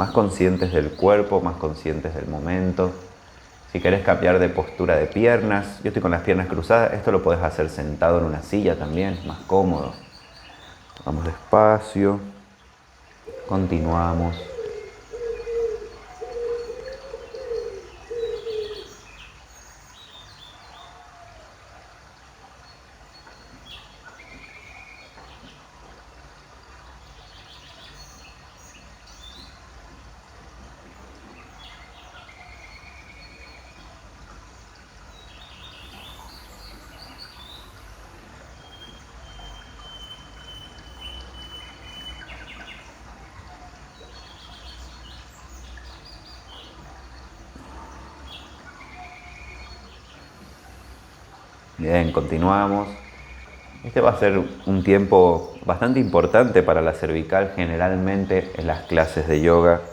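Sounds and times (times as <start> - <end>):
faint steady background noise: 0.0 - 59.9
songbirds chirping: 0.0 - 59.9
dove cooing: 13.2 - 19.1.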